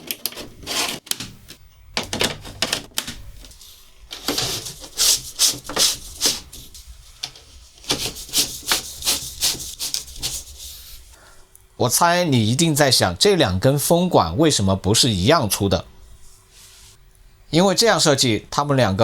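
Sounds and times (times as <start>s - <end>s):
plastic parts rubbing and clicking: 0.0s - 11.1s.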